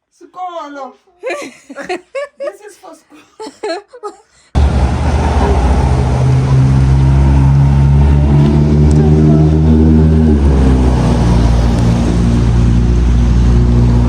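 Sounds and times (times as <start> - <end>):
car engine running: 4.6 - 14.0
road and wind rush: 4.6 - 14.0.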